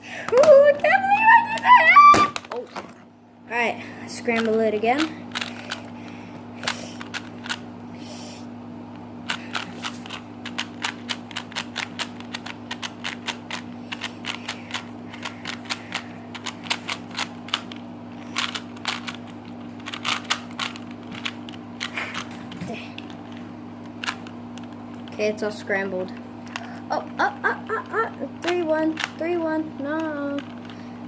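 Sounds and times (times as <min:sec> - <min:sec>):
plastic cube twisting clicks: 0:06.6 - 0:07.6, 0:09.3 - 0:22.3.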